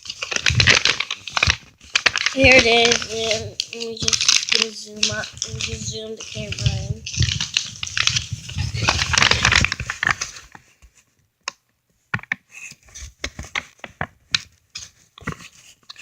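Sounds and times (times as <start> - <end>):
plastic packaging crinkling: 0.0 - 10.6.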